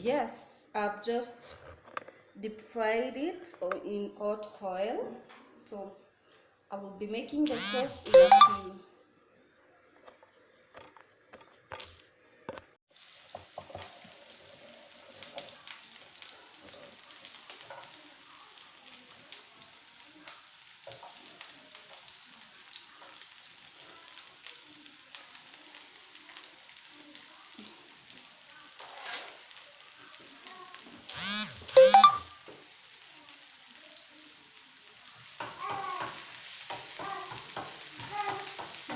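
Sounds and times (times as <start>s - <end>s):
stirring in pan: 12.9s - 31.1s, 34.7s - 38.9s
food sizzling in hot oil: 12.9s - 38.9s.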